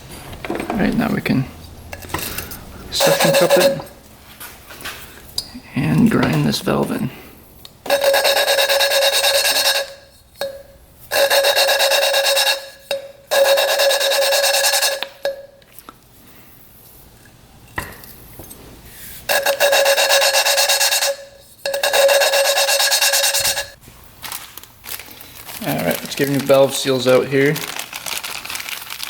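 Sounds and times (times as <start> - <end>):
gritty rasp of valve lapping: 1.9 - 4.0, 7.8 - 15.4, 19.0 - 23.8.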